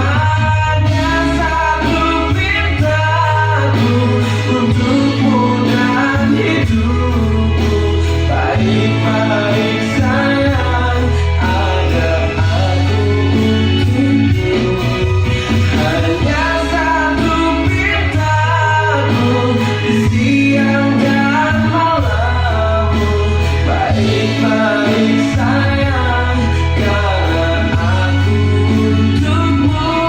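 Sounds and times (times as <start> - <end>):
pop song with male vocal: 0.0 - 30.0.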